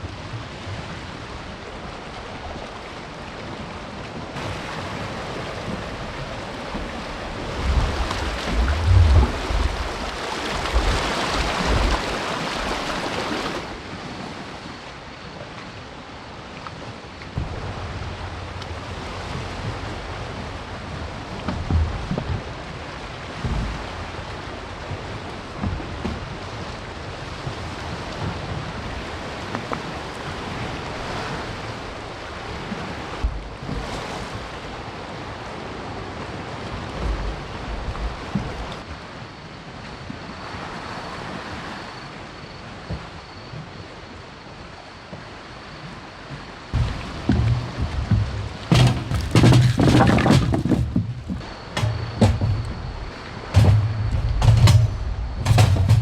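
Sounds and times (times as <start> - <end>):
wind buffeting microphone: 0.0 - 14.4, 46.8 - 56.0
sea waves washing on shore: 0.0 - 56.0.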